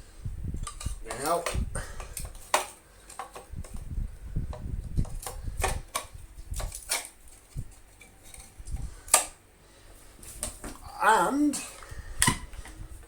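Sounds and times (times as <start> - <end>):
plastic parts clicking and knocking: 0.6 - 3.9, 4.5 - 9.4.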